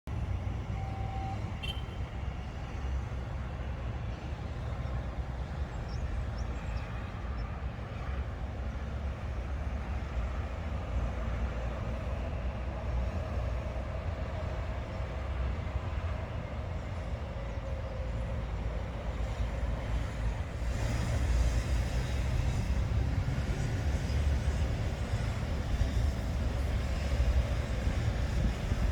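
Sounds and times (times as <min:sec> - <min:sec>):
wind buffeting microphone: 0:13.6 - 0:28.9.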